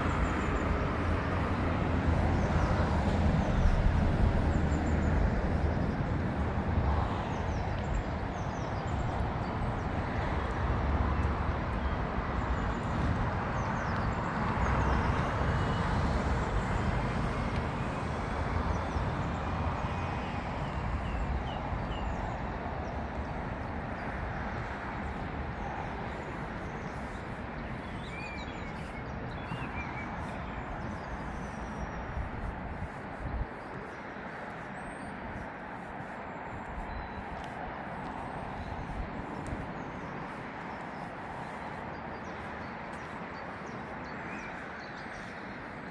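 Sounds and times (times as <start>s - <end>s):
small birds chirping: 0.0s - 9.1s, 18.7s - 45.9s
road traffic rumble: 0.0s - 45.9s.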